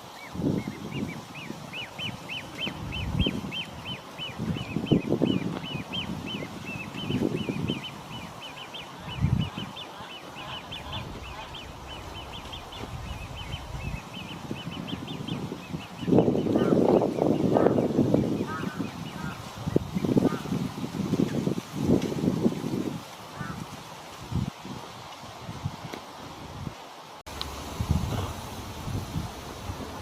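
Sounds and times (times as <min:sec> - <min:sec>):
loud low rumbles: 0:10.6 - 0:15.0.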